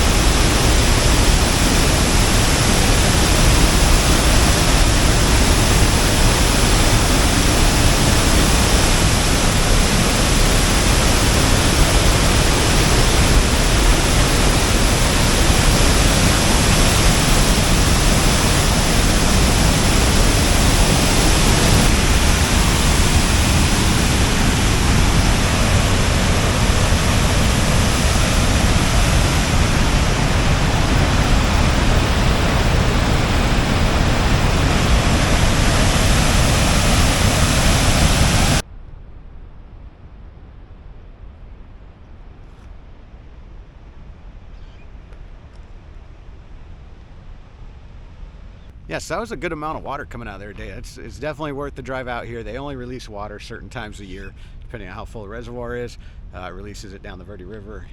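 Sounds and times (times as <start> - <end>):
heavy waterfall rushing: 0.0 - 38.6.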